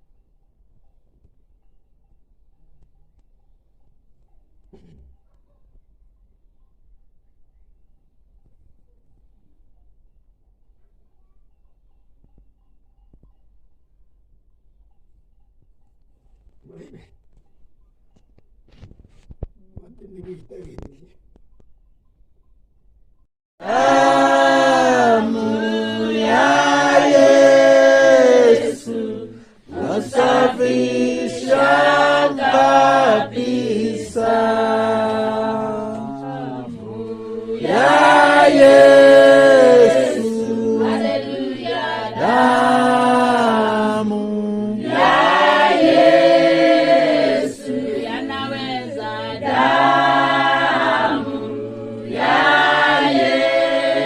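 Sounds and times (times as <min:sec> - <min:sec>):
choir singing a hymn: 0:23.6 - 0:54.0.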